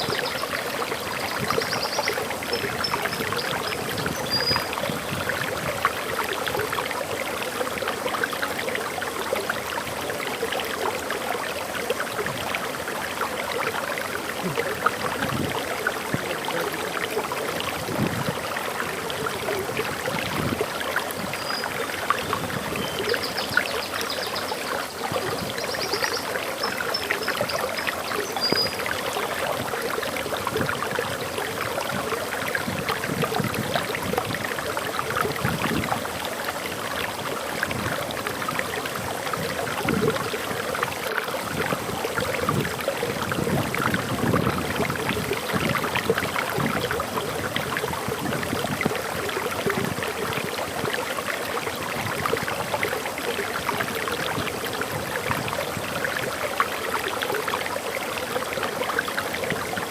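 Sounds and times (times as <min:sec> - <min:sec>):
waterfall rushing: 0:00.0 - 0:59.9
faint high bird chirps: 0:04.2 - 0:04.7, 0:21.3 - 0:21.7.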